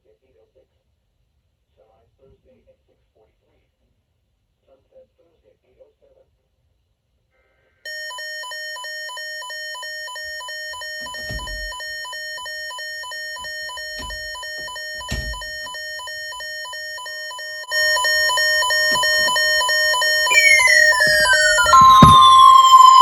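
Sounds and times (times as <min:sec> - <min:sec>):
weather radio alarm beeping: 0:07.9 - 0:23.0
steady electronic tone: 0:14.8 - 0:23.0.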